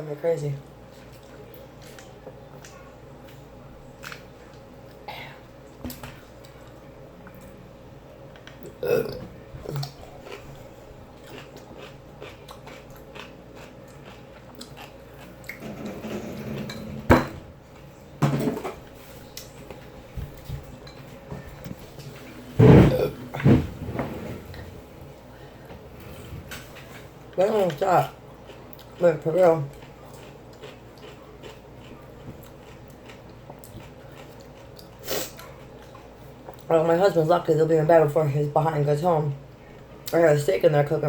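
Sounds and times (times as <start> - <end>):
chewing and mouth clicks: 1.0 - 5.0, 9.7 - 15.6, 27.4 - 36.7
woman burping: 8.7 - 9.9, 22.6 - 23.4.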